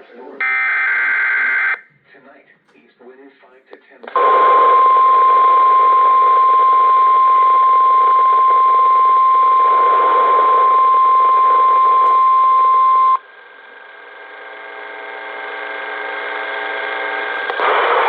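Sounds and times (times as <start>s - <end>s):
faint hum: 0.0s - 18.0s
loud steady alarm beep: 4.2s - 13.2s.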